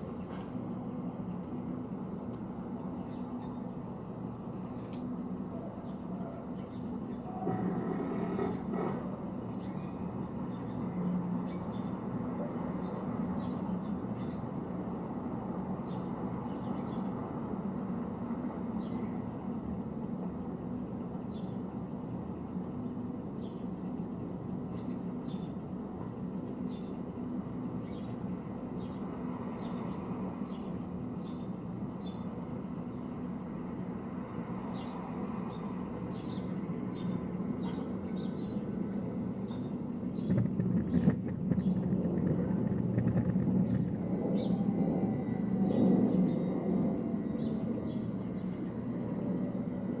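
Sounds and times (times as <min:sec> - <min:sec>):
low rumble: 0:40.2 - 0:50.0.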